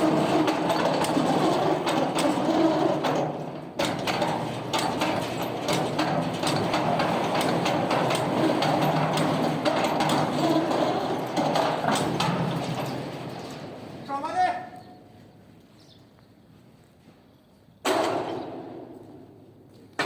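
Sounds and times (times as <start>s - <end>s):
heavy machinery rattling hum: 0.0s - 14.2s.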